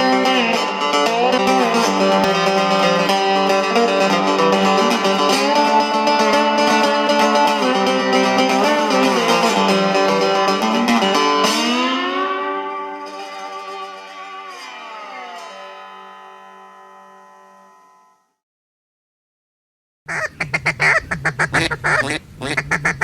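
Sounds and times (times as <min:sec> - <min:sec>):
guitar music with sliding notes: 0:00.0 - 0:17.6.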